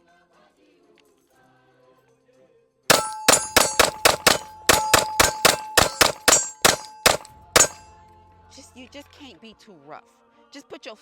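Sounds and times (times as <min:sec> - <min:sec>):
pistol fired rapidly: 0:02.9 - 0:07.9
ringing tone after shots: 0:02.9 - 0:08.2.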